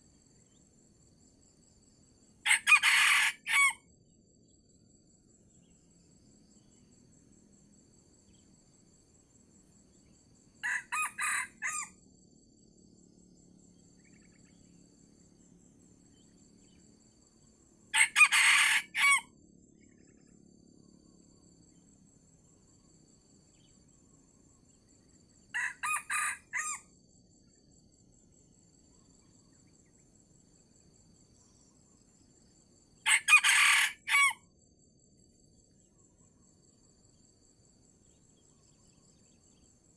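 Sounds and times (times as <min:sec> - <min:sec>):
junglefowl crowing: 0:02.4 - 0:03.8, 0:10.6 - 0:12.0, 0:18.0 - 0:19.3, 0:25.6 - 0:26.9, 0:33.0 - 0:34.4.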